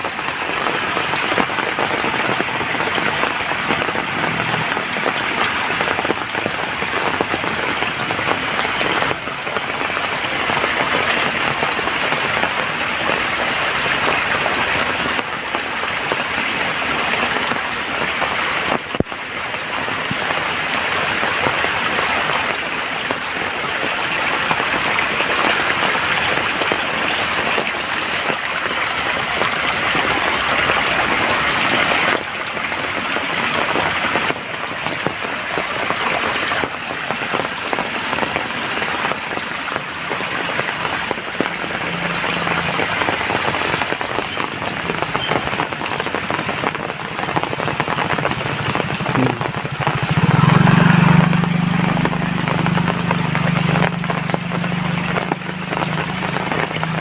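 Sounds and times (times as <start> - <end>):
heavy rain: 0.0 - 57.0.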